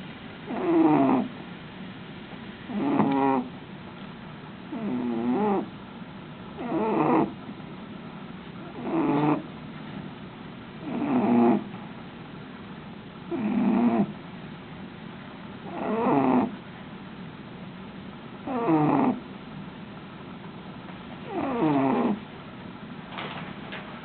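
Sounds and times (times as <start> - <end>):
dog snoring: 0.5 - 1.4, 2.7 - 3.5, 4.7 - 5.7, 6.6 - 7.4, 8.6 - 9.5, 10.8 - 11.8, 13.3 - 14.2, 15.6 - 16.6, 18.4 - 19.3, 21.2 - 22.3.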